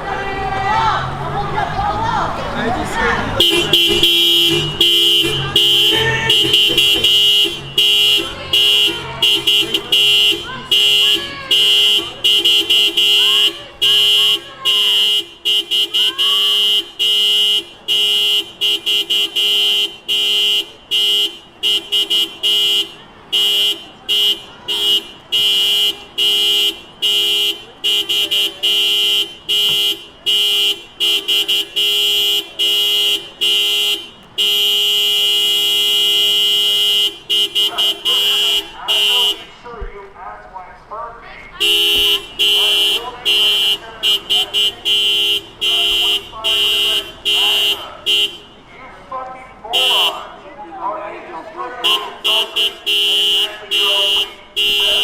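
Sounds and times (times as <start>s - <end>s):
car horn honking: 0.0s - 39.8s, 41.5s - 55.0s.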